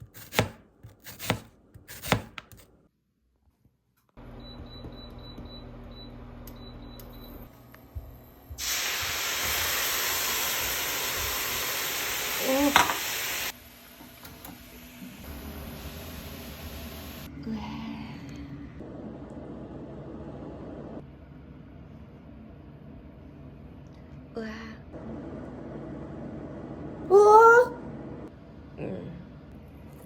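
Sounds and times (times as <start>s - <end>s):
loud even hiss: 8.6s - 13.6s.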